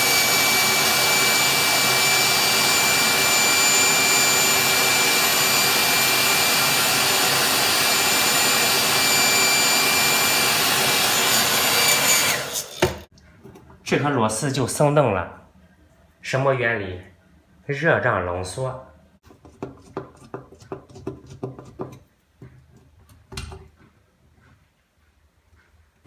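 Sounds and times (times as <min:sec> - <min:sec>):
hot-air blower whining: 0:00.0 - 0:13.1.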